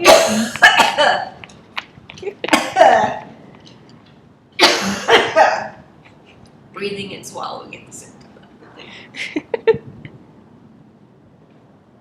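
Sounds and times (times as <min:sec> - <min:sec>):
person coughing and choking: 0:00.0 - 0:01.4, 0:02.4 - 0:03.4, 0:04.6 - 0:05.8.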